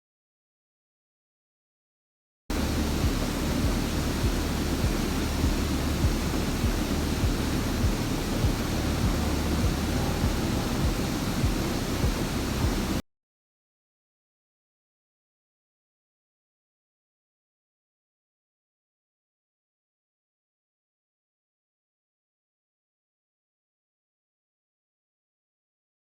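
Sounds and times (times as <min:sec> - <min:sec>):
waterfall roar: 0:02.5 - 0:13.0.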